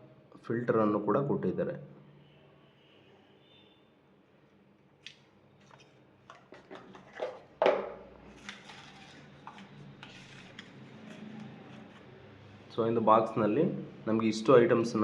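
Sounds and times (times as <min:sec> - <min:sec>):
object set down knock: 0:06.3 - 0:08.0.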